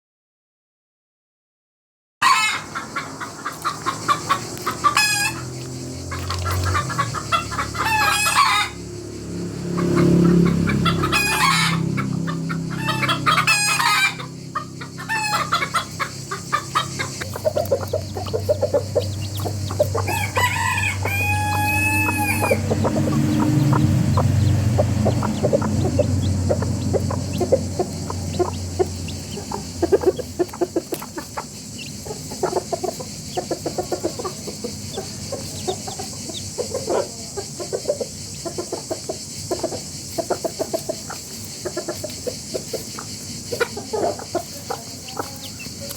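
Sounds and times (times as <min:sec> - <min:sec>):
rooster crowing: 0:02.2 - 0:09.0, 0:09.8 - 0:37.5
chickens squawking and clucking: 0:02.2 - 0:45.9.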